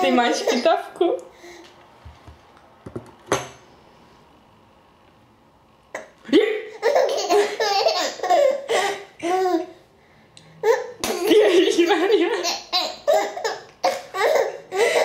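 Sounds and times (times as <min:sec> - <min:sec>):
baby laughing: 0:06.0 - 0:09.7, 0:10.6 - 0:15.0.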